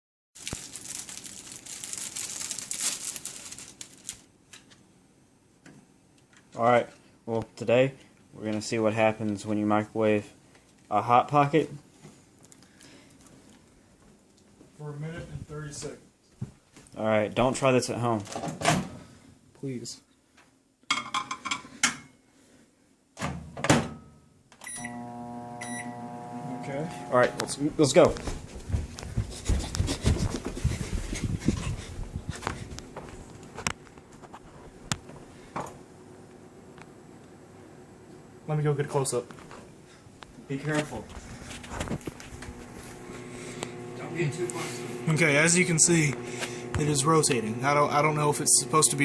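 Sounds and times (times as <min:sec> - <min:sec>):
crinkling rustling: 0:00.4 - 0:04.7, 0:39.2 - 0:43.8
microwave keypad beeps: 0:24.6 - 0:25.0, 0:25.6 - 0:26.0
microwave humming: 0:24.6 - 0:28.8, 0:32.8 - 0:40.2, 0:41.1 - 0:49.0
short beeps: 0:25.6 - 0:26.0.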